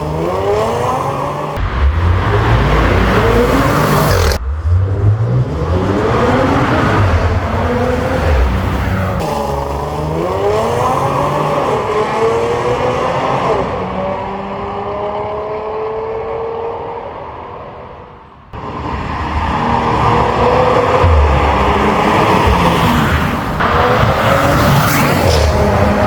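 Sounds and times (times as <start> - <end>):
car engine revving hard: 0.0 - 17.0, 18.6 - 26.0.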